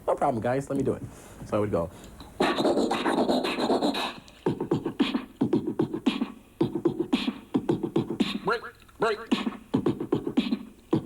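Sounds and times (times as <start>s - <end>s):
man beatboxing: 2.3s - 11.0s.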